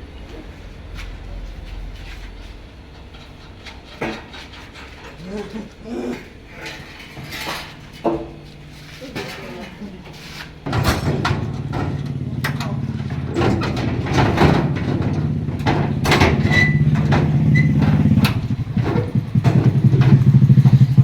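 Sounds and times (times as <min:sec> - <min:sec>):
knocks and clatter: 0:10.6 - 0:21.0
machine engine running: 0:10.6 - 0:21.0.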